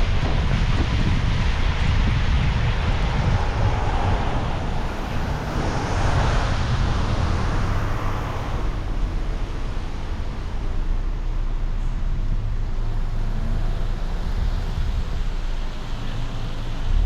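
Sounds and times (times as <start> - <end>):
passing vehicle hiss: 0.0 - 17.0
road noise: 0.0 - 17.0
wind rumbling on microphone: 0.0 - 17.0.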